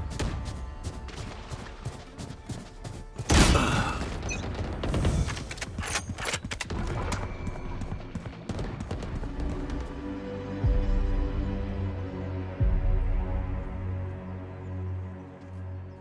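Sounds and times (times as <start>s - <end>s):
background music: 0.0s - 16.0s
video game gunfire: 3.2s - 9.9s.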